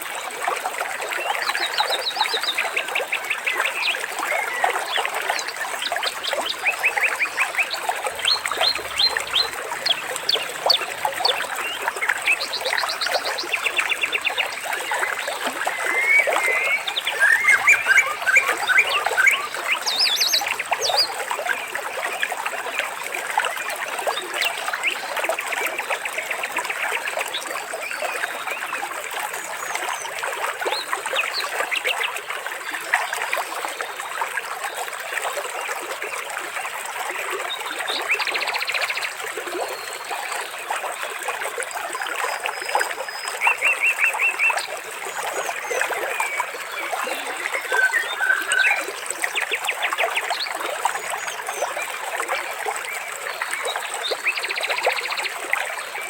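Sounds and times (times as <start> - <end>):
water trickling and splashing: 0.0 - 56.0
bird trills: 15.7 - 21.1.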